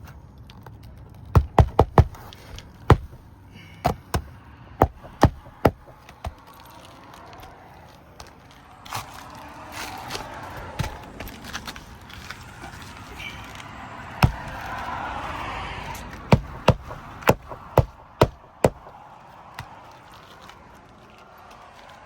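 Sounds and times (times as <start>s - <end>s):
hammer striking roofing nail: 1.3s - 2.3s, 2.9s - 6.4s, 14.2s - 14.6s, 16.3s - 19.0s.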